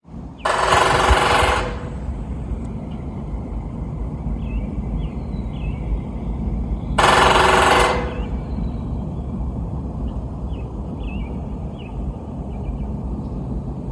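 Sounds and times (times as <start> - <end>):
woodpecker drumming on metal: 0.4 - 2.2, 7.0 - 8.5.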